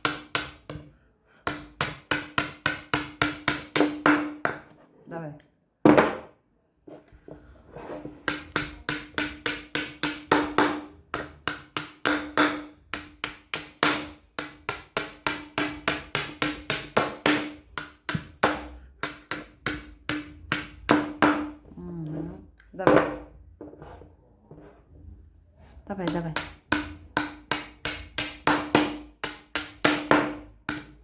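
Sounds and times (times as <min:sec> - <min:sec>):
hammer tapping on wood: 0:00.0 - 0:00.9, 0:01.5 - 0:04.7, 0:08.2 - 0:21.6, 0:26.0 - 0:31.0.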